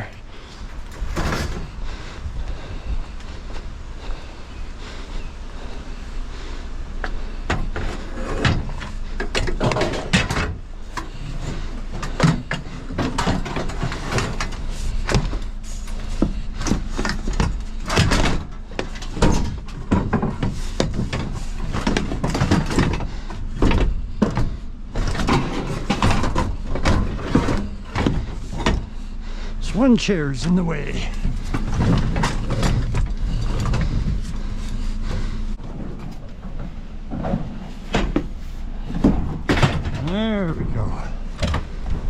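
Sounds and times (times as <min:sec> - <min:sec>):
scrap metal clanking and scraping: 0:00.6 - 0:01.8, 0:07.5 - 0:29.2, 0:30.8 - 0:40.2.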